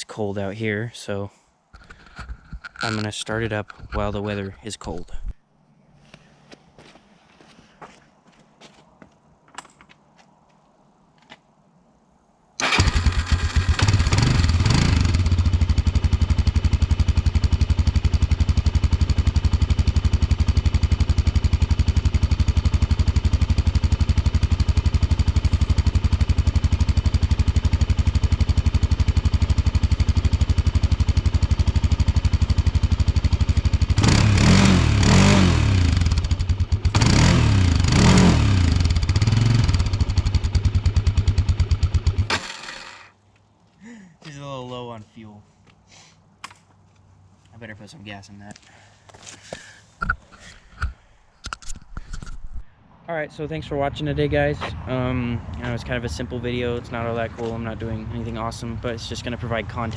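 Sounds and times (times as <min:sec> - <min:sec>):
atv engine starting and idling: 0:12.6 - 0:43.1, 0:54.6 - 0:59.9.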